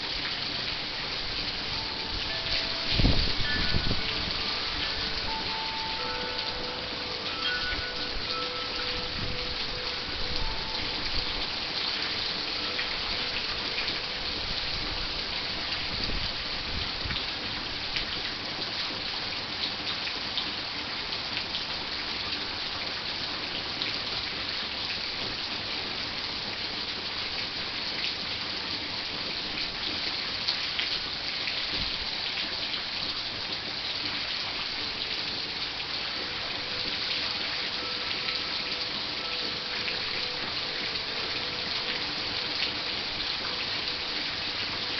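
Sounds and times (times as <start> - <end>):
heavy rain falling: 0.0 - 44.9
raindrops ticking close: 0.0 - 44.9.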